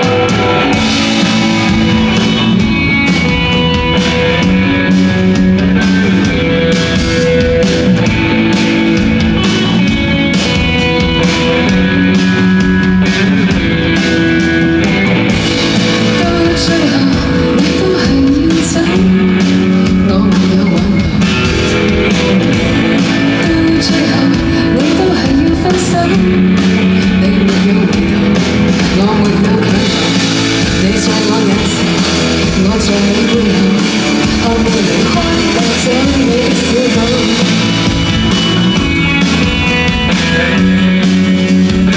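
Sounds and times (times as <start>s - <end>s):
pop-rock band playing live: 0.0s - 41.9s
person singing: 15.7s - 21.6s, 22.8s - 38.2s.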